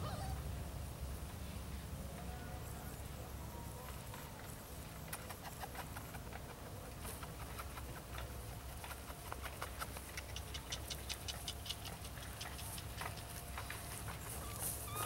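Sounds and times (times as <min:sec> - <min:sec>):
puppies clicking and tapping: 0:04.4 - 0:15.0.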